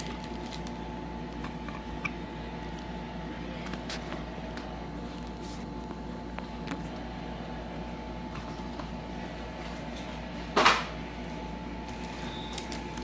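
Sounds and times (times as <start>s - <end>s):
packaging crinkle: 0.0s - 1.6s, 11.8s - 13.0s
background hum: 0.0s - 13.0s.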